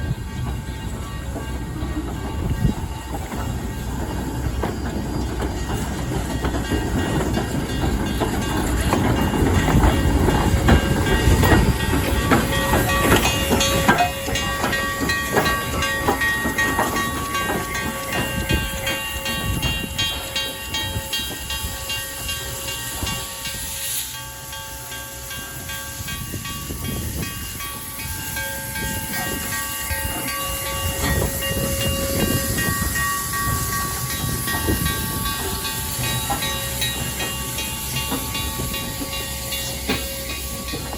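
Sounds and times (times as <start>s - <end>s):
train rumbling on track: 0.0s - 40.9s
hiss: 18.6s - 40.9s.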